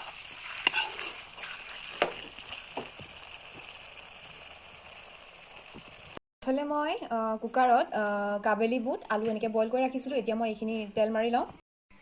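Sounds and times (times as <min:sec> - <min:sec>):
chicken sizzling in a pan: 0:00.0 - 0:06.2.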